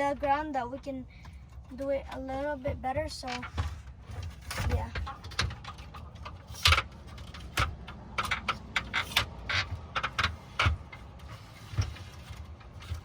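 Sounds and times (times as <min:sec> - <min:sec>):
metal table clicking and clanking: 0:03.1 - 0:13.0.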